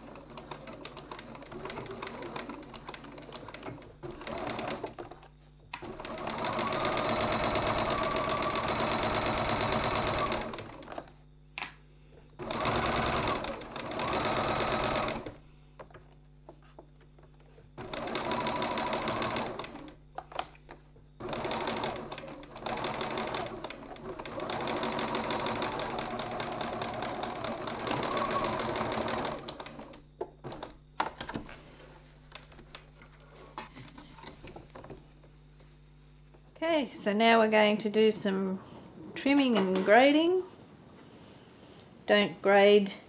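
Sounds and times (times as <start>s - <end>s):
sewing machine stitching: 0.0s - 11.1s, 12.4s - 15.4s, 17.8s - 20.0s, 21.2s - 30.8s.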